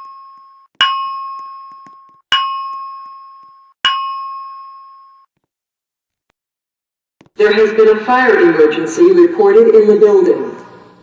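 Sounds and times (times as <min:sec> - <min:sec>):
bell-like chime tones: 0:00.0 - 0:05.3.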